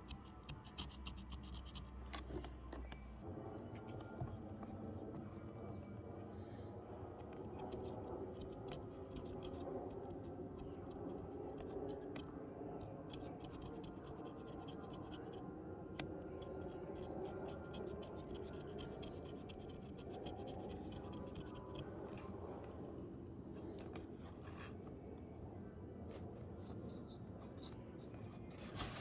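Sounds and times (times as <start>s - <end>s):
carving tool scraping wood: 0.0s - 2.6s, 7.2s - 15.4s, 16.0s - 22.3s.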